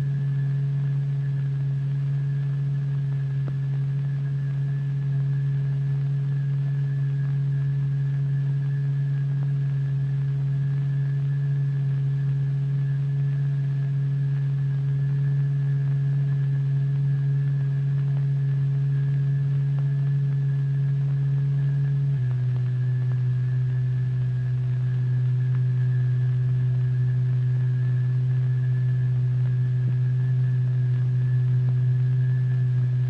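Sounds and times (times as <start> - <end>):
faint higher whine: 0.0 - 33.0
low electronic hum: 0.0 - 33.0.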